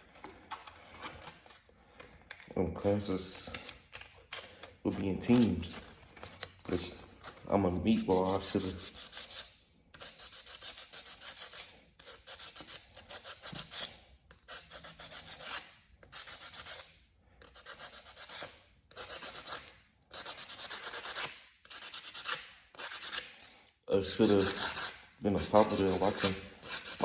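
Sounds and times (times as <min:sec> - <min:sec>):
sandpaper rubbing on metal: 0:08.0 - 0:13.9, 0:20.2 - 0:27.0.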